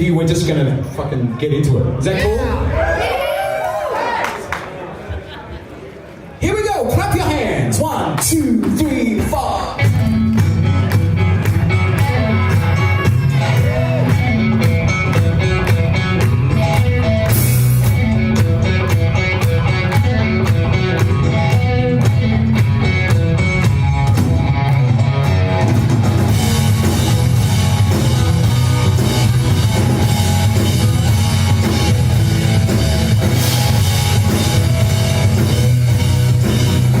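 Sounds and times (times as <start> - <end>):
electric guitar: 9.7 - 37.0
drum kit with cymbals: 25.2 - 37.0.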